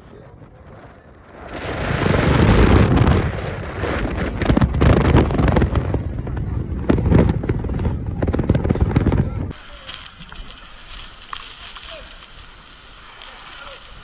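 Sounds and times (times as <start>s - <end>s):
wind buffeting microphone: 0.0s - 9.6s
crackles: 0.0s - 14.0s.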